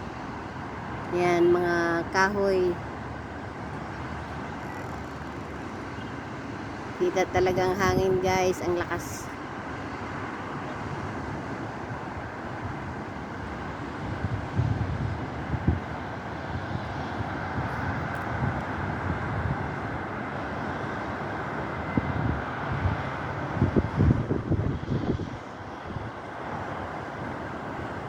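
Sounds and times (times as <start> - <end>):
strong wind blowing: 6.7 - 9.4, 10.9 - 28.0
wind buffeting microphone: 7.0 - 9.3, 11.3 - 28.0.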